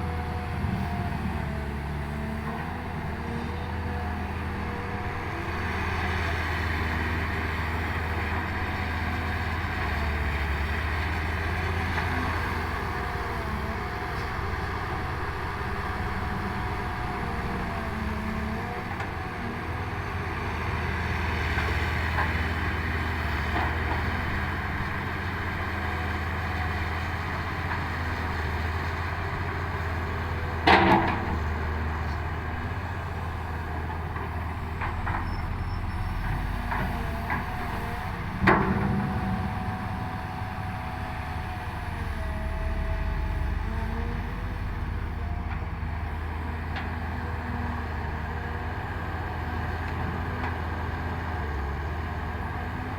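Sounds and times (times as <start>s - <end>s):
excavator diesel engine running: 0.0s - 52.9s
sharp bangs: 38.4s - 41.8s.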